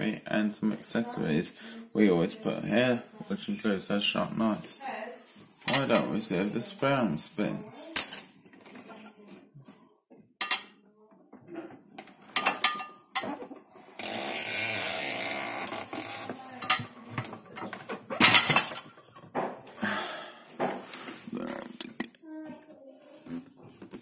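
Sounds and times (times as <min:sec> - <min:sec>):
crockery and cutlery clinking: 0:05.6 - 0:06.2, 0:07.8 - 0:08.4, 0:10.4 - 0:10.8, 0:12.2 - 0:13.5, 0:16.6 - 0:19.6.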